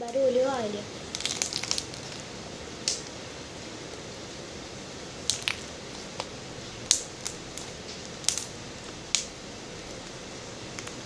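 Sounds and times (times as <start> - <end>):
slime popping and crackling: 1.0 - 3.2, 5.1 - 11.0.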